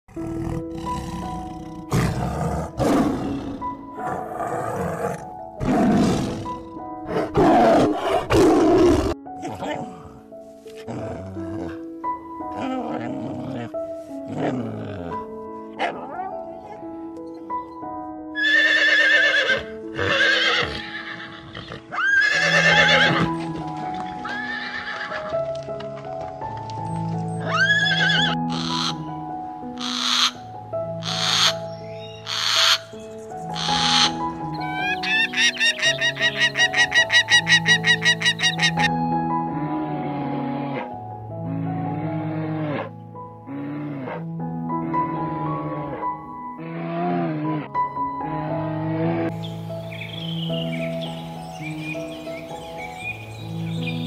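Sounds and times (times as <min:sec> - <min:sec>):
background music: 0:00.1 - 0:54.0
horse whinnying: 0:18.4 - 0:25.3, 0:27.4 - 0:29.0, 0:33.6 - 0:38.9.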